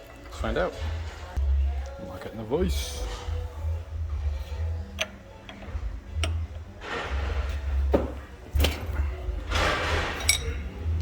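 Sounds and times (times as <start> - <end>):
metal scraping: 2.7 - 7.9, 9.0 - 11.0.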